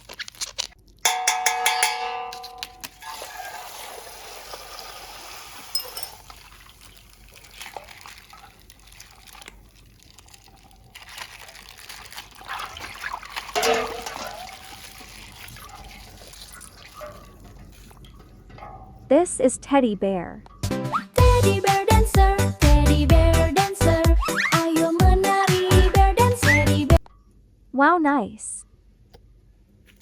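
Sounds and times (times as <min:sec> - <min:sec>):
plastic bag crackling: 0:00.0 - 0:01.0, 0:06.1 - 0:17.9
water pouring from plastic bag: 0:02.9 - 0:18.0.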